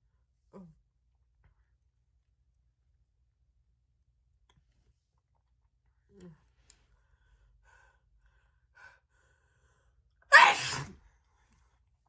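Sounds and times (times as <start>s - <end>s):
woman sneezing: 10.3s - 10.9s.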